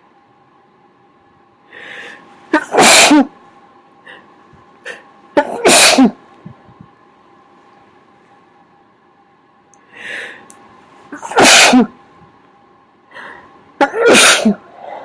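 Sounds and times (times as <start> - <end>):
person sneezing: 2.6 - 3.3, 4.9 - 6.2, 11.2 - 11.9, 13.8 - 14.7
short in-breath: 9.9 - 10.5.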